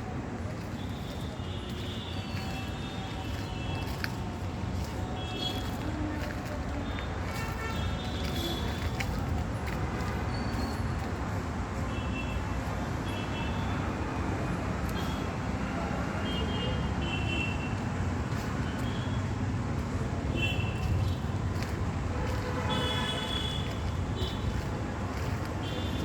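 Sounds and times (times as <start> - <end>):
road traffic rumble: 0.0 - 26.0
vehicle horn toots: 22.4 - 24.4.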